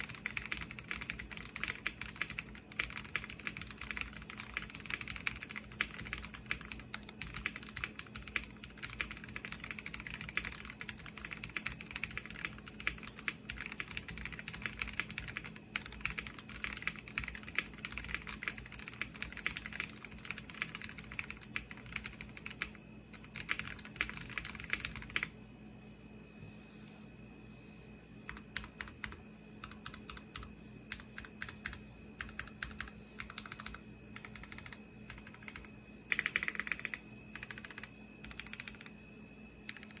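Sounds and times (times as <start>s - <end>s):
mechanical keyboard typing: 0.0s - 25.3s, 28.3s - 38.9s, 39.7s - 40.0s.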